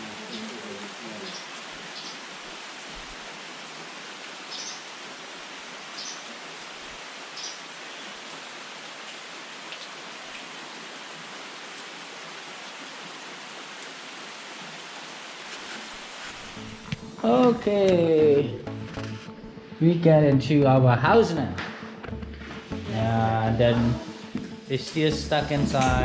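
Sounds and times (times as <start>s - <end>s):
steady rain: 0.0s - 18.6s.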